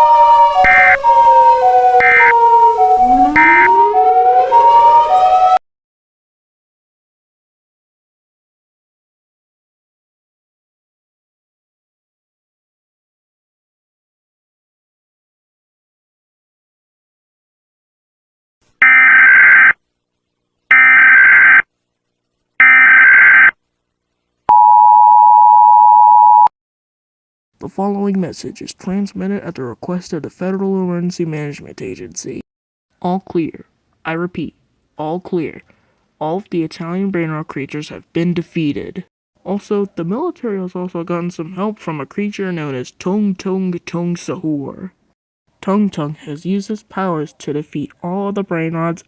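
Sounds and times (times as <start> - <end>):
hi-lo siren: 0.0 - 5.6, 18.8 - 19.8, 20.7 - 21.6, 22.6 - 23.5
horn blasts: 0.0 - 5.6
two-tone attention signal: 0.0 - 5.6, 24.5 - 26.5
wailing siren: 0.0 - 5.6, 20.8 - 21.6.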